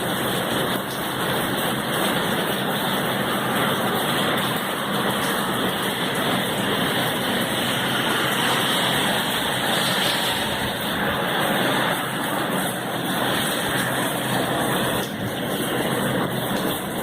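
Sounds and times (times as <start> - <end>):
heavy rain hissing: 0.0 - 17.0.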